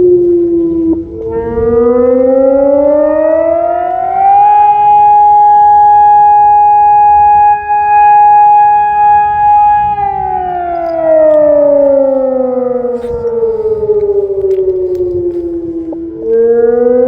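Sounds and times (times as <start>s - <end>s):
civil defence siren wailing: 0.0s - 17.0s.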